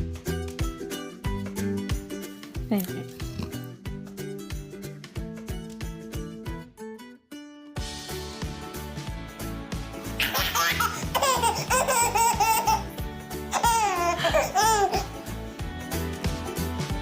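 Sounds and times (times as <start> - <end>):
background music with beat: 0.0 - 6.8, 7.8 - 17.0
baby laughing: 10.2 - 15.2.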